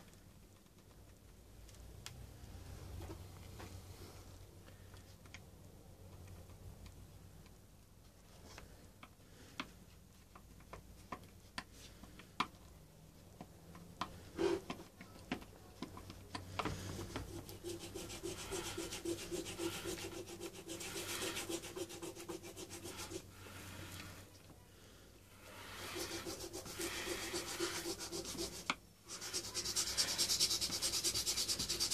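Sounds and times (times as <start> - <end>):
tool scraping plastic: 14.1 - 14.9, 16.5 - 24.3, 25.3 - 31.9.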